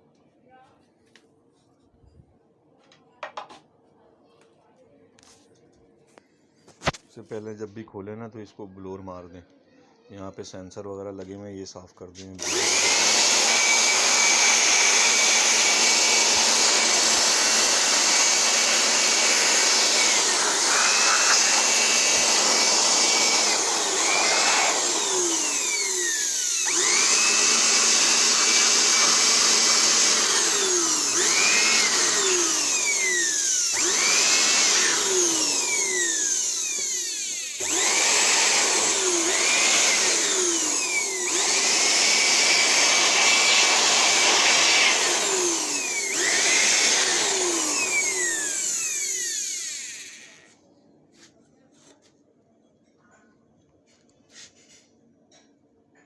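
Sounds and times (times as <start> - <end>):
electric air blower whining: 12.4 - 50.5.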